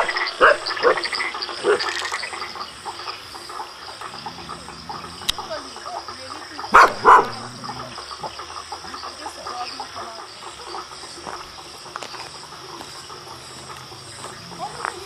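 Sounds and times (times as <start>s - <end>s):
frogs and insects calling: 0.0s - 15.0s
high insect drone: 0.0s - 15.0s
loud dog bark: 0.4s - 1.0s, 6.7s - 7.7s.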